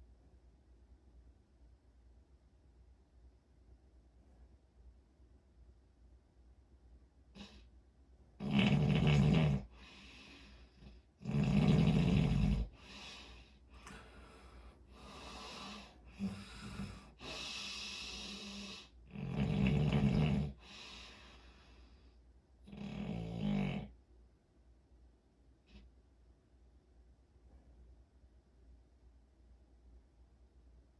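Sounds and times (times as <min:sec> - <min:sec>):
loud snores: 0:08.4 - 0:10.0, 0:11.2 - 0:13.0, 0:15.0 - 0:20.9, 0:22.7 - 0:24.0
soft breaths: 0:09.3 - 0:19.1, 0:20.0 - 0:22.6.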